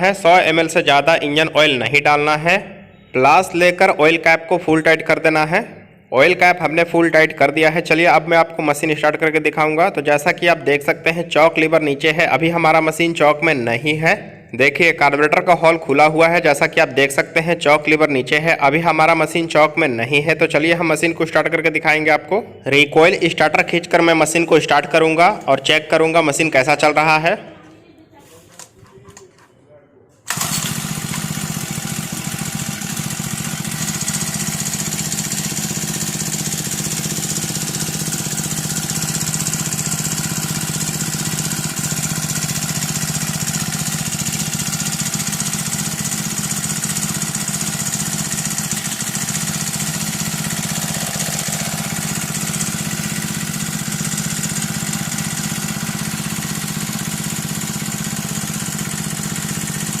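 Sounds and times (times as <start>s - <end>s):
brush cutter engine running: 30.3s - 60.0s.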